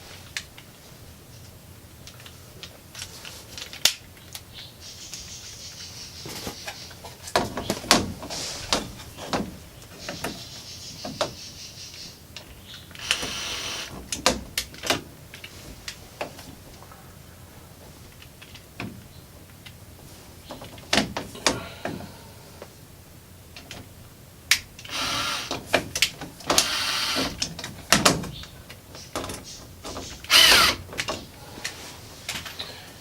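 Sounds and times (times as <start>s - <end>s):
power drill drilling: 13.0s - 13.9s, 24.9s - 25.6s, 26.5s - 27.4s, 30.3s - 30.8s.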